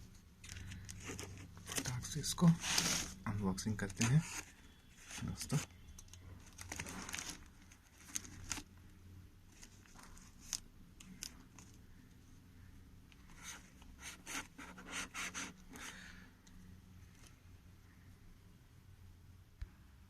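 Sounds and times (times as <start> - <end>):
cardboard scraping and rustling: 0.7 - 5.7, 6.4 - 8.7.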